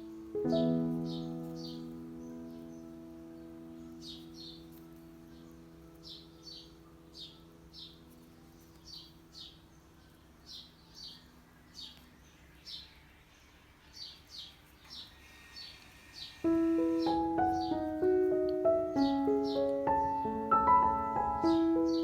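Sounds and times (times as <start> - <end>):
held piano chord: 0.0 - 9.6, 16.3 - 22.0
small bird chirping: 0.0 - 22.0.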